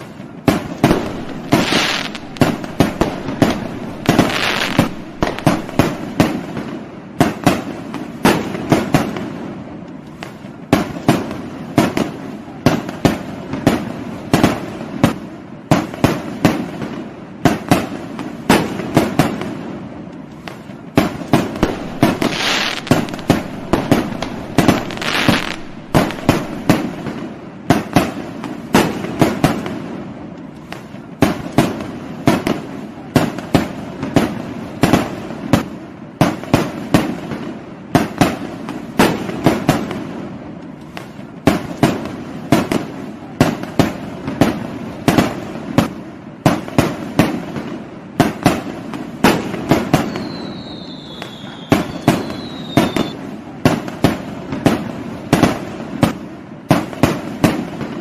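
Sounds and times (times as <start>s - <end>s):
fireworks crackling: 0.0s - 58.0s
fireworks bangs: 0.4s - 9.6s, 10.2s - 30.1s, 30.7s - 58.0s
falling whistle: 50.1s - 53.2s.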